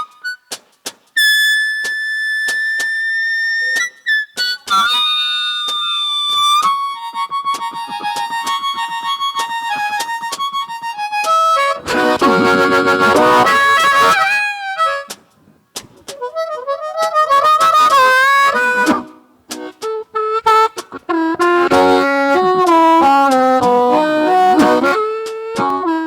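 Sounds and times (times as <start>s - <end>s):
blues harmonica playing: 0.0s - 0.6s, 1.2s - 15.2s, 16.1s - 26.0s.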